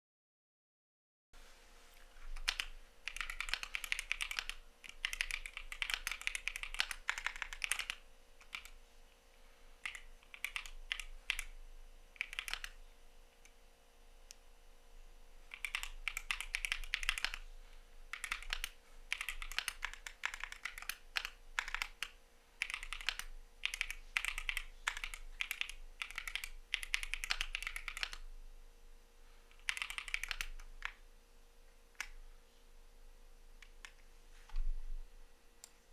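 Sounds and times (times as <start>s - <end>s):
fast typing on mechanical keyboard: 2.2s - 8.8s, 9.8s - 11.5s, 12.2s - 12.8s, 15.5s - 17.4s, 18.1s - 28.2s, 29.5s - 31.0s.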